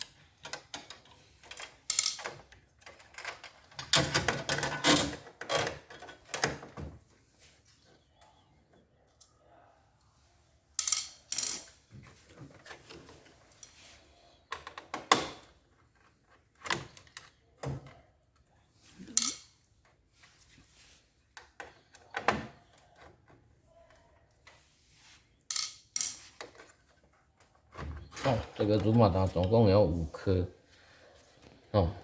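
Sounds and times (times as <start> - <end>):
hard parts knocking and clattering: 0.0 - 7.0.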